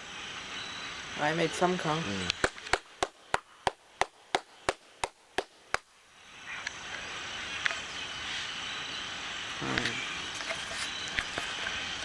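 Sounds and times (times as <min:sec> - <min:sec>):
flock of birds chirping: 0:00.0 - 0:04.7, 0:06.1 - 0:12.0
sharp hand claps: 0:02.3 - 0:05.9.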